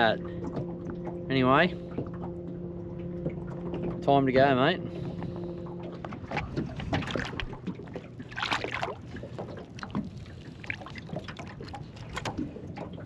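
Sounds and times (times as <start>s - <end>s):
water splashing and trickling: 5.8s - 13.0s.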